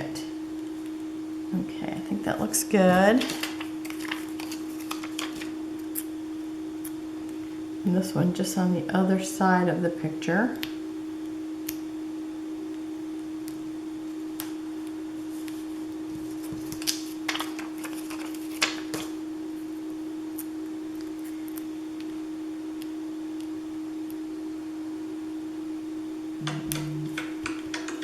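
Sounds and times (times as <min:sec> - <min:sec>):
steady humming tone: 0:00.0 - 0:28.0
paper stickers clicking and crinkling: 0:03.0 - 0:06.1, 0:16.2 - 0:19.1, 0:26.7 - 0:28.0.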